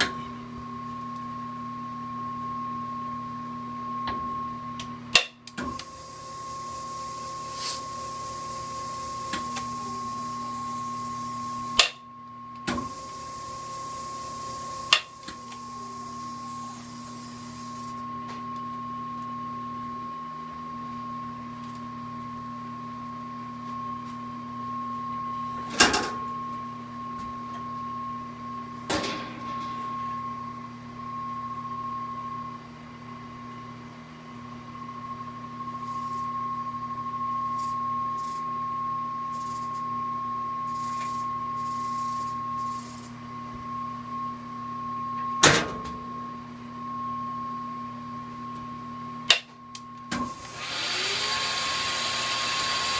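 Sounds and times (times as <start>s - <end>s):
lathe motor hum and whine: 5.7s - 28.8s, 50.2s - 52.9s.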